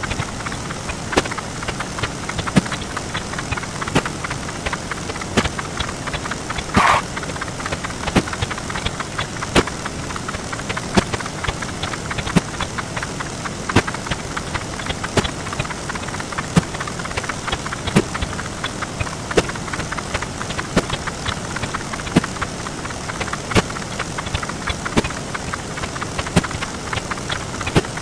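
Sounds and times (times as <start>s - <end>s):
sped-up counting sound effects: 6.7s - 7.1s.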